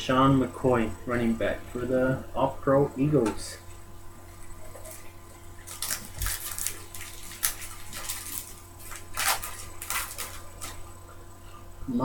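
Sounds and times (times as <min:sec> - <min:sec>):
foil wrapper crinkling and tearing: 0:04.7 - 0:11.0.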